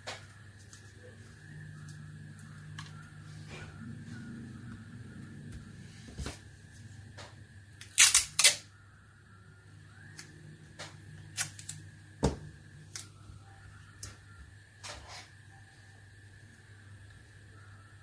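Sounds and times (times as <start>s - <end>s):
low hum: 0.0s - 14.8s
plastic parts snapping: 7.8s - 8.6s.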